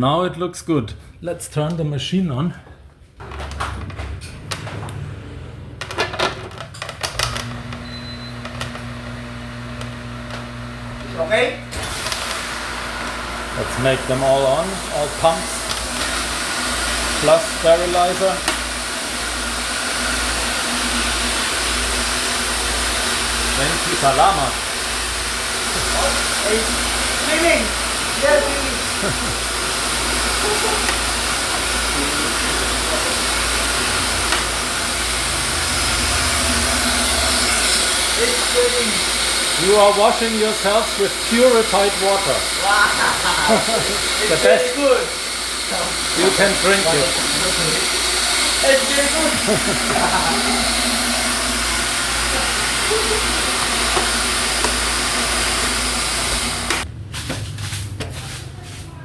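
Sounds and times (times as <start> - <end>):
water rushing with hiss: 13.6 - 56.8.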